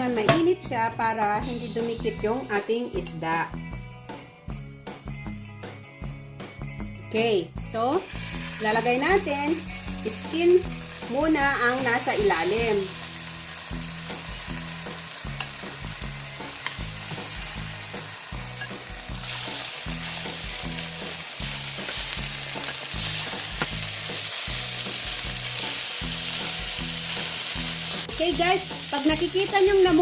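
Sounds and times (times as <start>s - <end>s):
fish sizzling in a pan: 8.0s - 30.0s.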